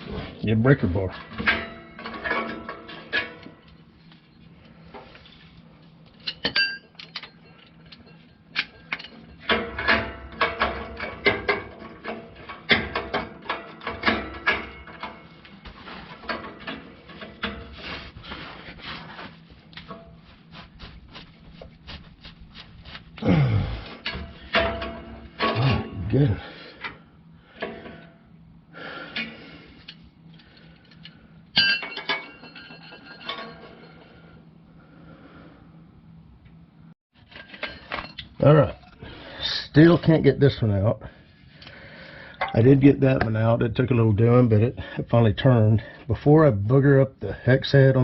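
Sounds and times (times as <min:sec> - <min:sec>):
low grunt: 0:23.2 - 0:24.0, 0:25.5 - 0:26.6.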